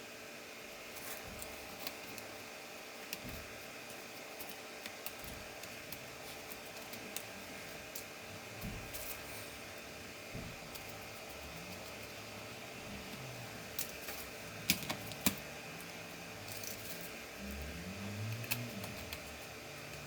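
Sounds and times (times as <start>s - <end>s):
small tools clicking and tapping: 13.8s - 15.4s.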